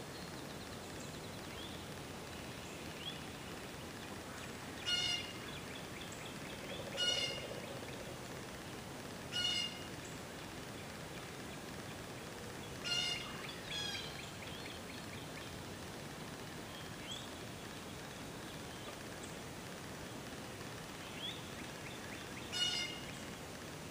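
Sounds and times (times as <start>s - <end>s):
faint bird chirps: 0.0s - 8.2s, 21.0s - 23.3s
background hiss: 0.0s - 23.9s
bird giving nasal calls: 4.8s - 5.5s, 6.9s - 7.7s, 9.3s - 9.9s, 12.8s - 14.2s, 22.5s - 23.1s.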